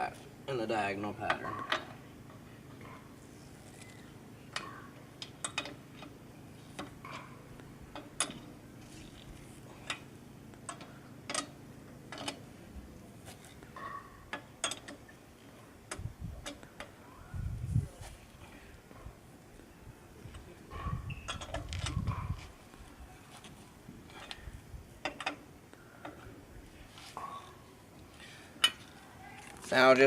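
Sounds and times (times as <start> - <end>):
lug wrench clicking on lug nuts: 9.8 - 12.4, 13.8 - 15.1, 25.0 - 25.4.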